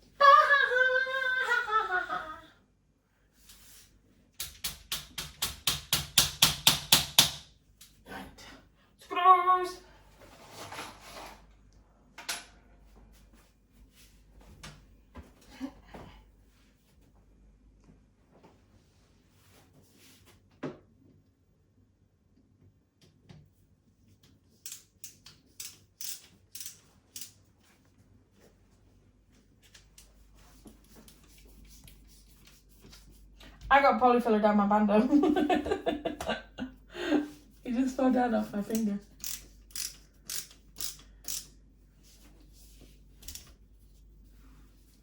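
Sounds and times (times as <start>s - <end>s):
faint scraping rustle: 10.1s - 11.5s.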